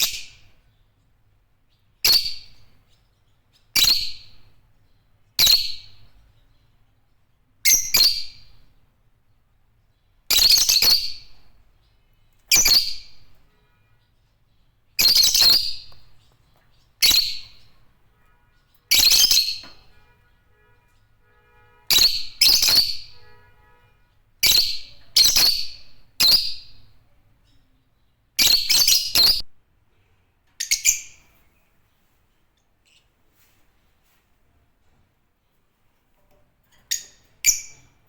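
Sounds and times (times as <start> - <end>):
lovebirds shrill calls: 0.0 - 0.6, 2.0 - 4.6, 5.4 - 6.4, 7.7 - 8.7, 10.3 - 11.6, 12.3 - 13.5, 15.0 - 17.9, 18.6 - 20.0, 21.9 - 23.4, 24.4 - 26.8, 28.4 - 29.5.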